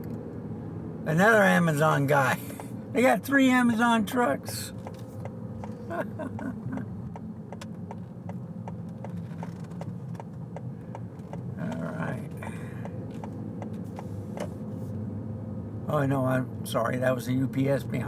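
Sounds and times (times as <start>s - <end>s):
car cabin hum: 0.0s - 18.0s
turn signal clicking: 4.7s - 14.5s.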